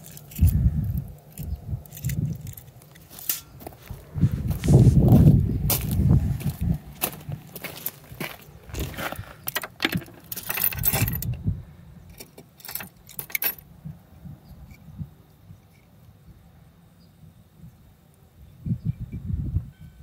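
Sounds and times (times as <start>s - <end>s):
metal pieces clinking: 0.0s - 0.6s, 1.3s - 3.7s, 7.6s - 11.4s, 12.1s - 13.6s.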